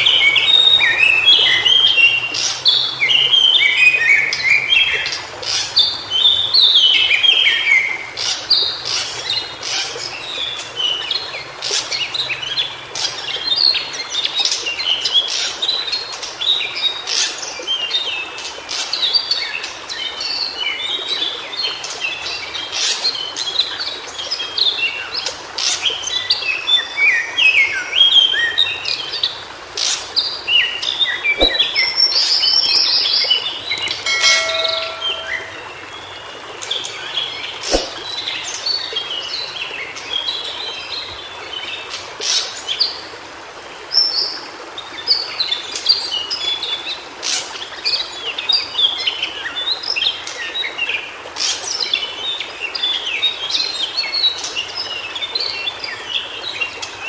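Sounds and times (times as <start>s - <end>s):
sharp clicks in birdsong: 30.8s - 35.6s.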